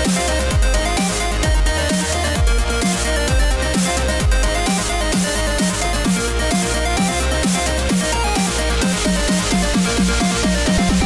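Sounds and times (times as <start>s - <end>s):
deep bass: 0.0s - 11.0s
electronic music: 0.0s - 11.0s
kick drum beat: 0.5s - 0.8s, 1.4s - 4.6s.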